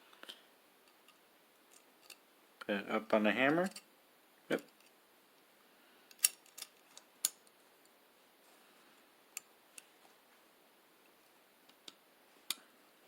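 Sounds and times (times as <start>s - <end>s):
revolver parts clicking: 6.1s - 7.5s.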